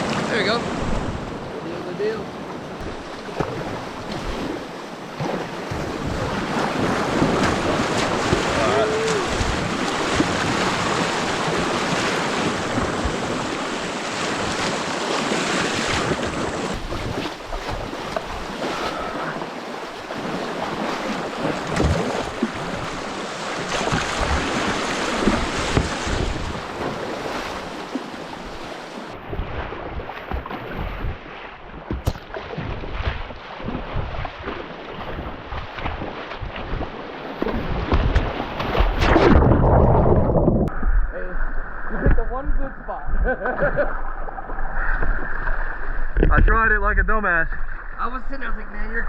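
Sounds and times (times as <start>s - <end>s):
rushing whitewater: 0.0s - 29.2s
wind buffeting microphone: 2.6s - 14.6s, 15.8s - 19.0s, 37.6s - 43.8s.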